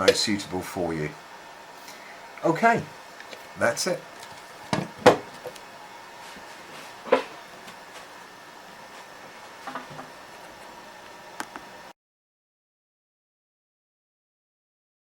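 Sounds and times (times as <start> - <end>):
faint steady hum: 0.0 - 11.9
hard objects knocking and clunking: 4.2 - 5.6, 9.6 - 10.2.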